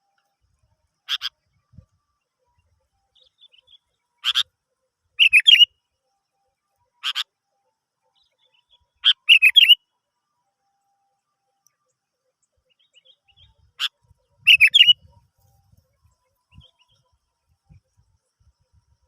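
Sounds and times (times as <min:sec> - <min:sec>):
bulbul calling: 0:01.1 - 0:01.3, 0:03.2 - 0:04.5, 0:05.2 - 0:05.7, 0:07.0 - 0:07.2, 0:08.5 - 0:09.8, 0:12.7 - 0:15.1.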